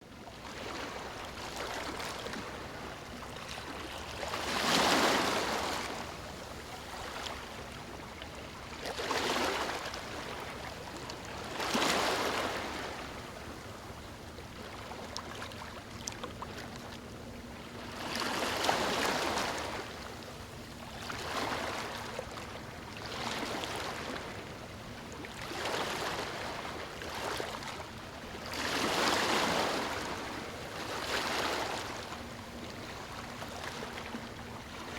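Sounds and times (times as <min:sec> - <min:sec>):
ocean waves breaking on beach: 0:00.4 - 0:07.8, 0:08.5 - 0:13.4, 0:25.3 - 0:34.9.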